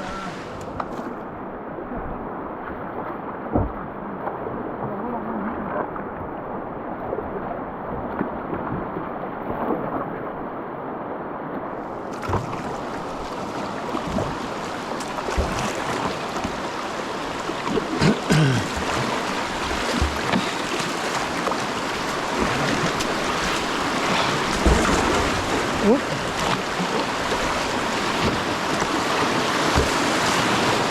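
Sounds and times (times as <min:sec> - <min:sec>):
whitewater rapids rushing: 0:00.0 - 0:00.8, 0:12.5 - 0:30.9
paddle splashes and knocks: 0:00.0 - 0:10.5, 0:11.5 - 0:30.9.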